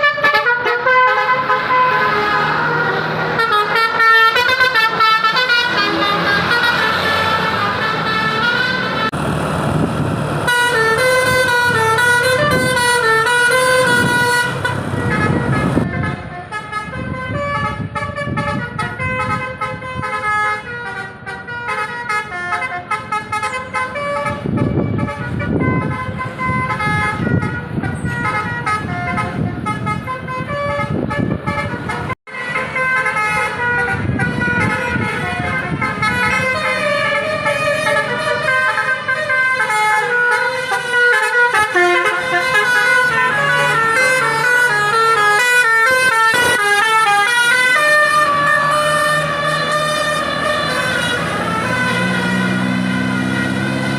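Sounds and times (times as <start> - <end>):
bus air horn playing a tune: 0.0 - 9.2, 10.5 - 53.9.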